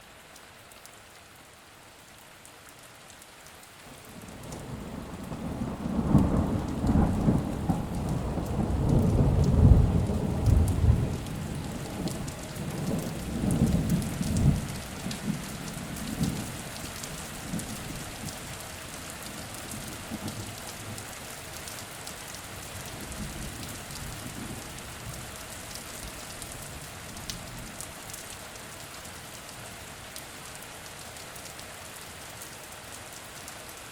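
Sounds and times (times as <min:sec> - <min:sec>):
rain falling on leaves: 0:00.0 - 0:33.9
rolling thunder: 0:04.1 - 0:15.5.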